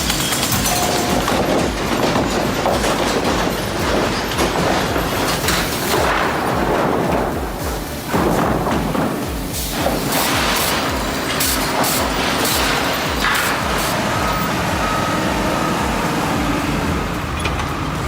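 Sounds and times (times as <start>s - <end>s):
heavy machinery clatter: 0.0s - 18.0s
knocks and thumps: 0.0s - 18.0s.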